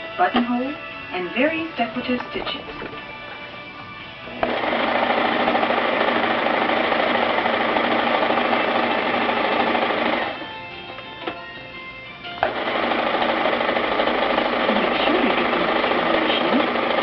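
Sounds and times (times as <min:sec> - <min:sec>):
sewing machine stitching: 0:04.4 - 0:10.4, 0:12.4 - 0:17.0.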